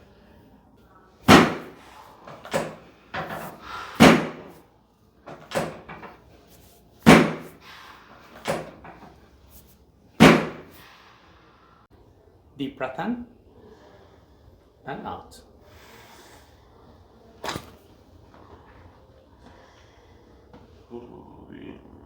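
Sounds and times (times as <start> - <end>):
loud sharp thumps with ringing: 1.3 - 1.8, 4.0 - 4.5, 7.1 - 7.6, 10.2 - 10.7.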